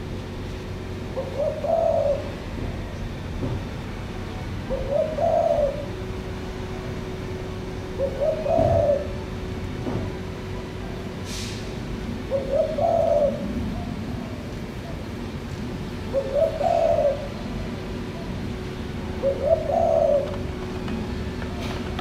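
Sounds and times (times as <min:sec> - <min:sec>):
dove cooing: 0:01.0 - 0:03.3, 0:04.3 - 0:09.6, 0:12.2 - 0:22.0.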